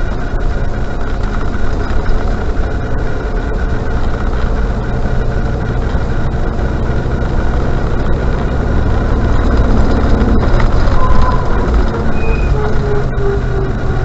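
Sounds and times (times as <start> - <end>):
car engine running: 0.0 - 14.0
road noise: 0.0 - 14.0
brake squeal: 6.0 - 14.0.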